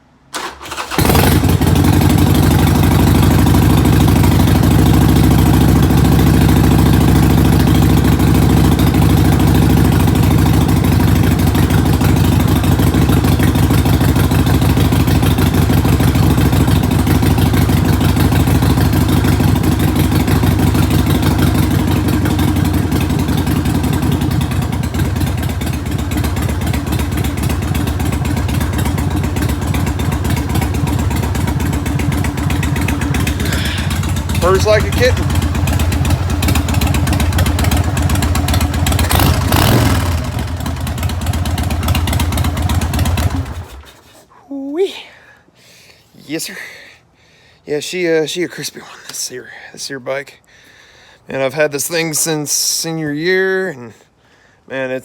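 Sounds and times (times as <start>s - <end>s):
motorcycle engine starting and running: 0.0s - 44.2s.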